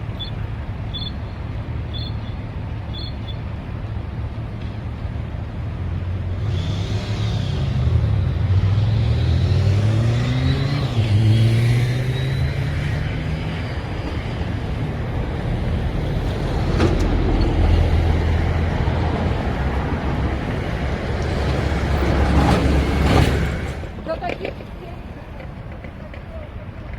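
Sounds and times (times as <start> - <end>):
road traffic rumble: 0.0 - 26.9
vehicle engine accelerating: 5.5 - 24.1.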